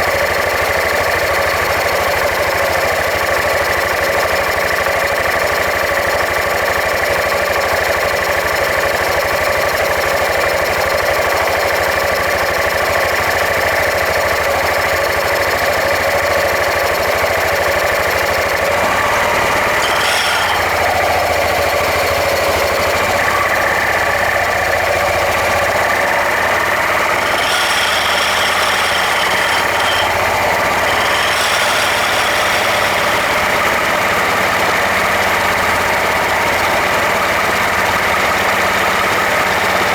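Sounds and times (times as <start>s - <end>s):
abnormal drive noise: 10.0s - 39.9s
scooter running: 16.2s - 39.9s.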